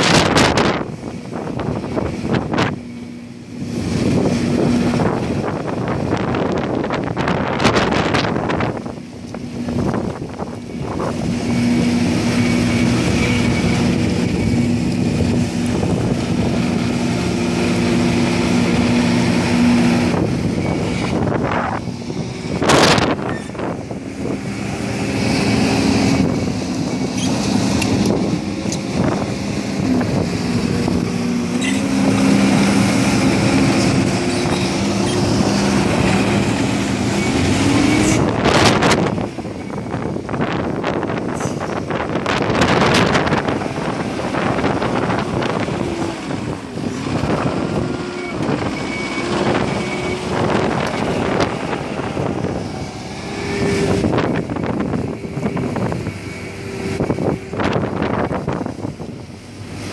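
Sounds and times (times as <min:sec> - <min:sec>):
diesel engine running: 0:00.0 - 0:59.9.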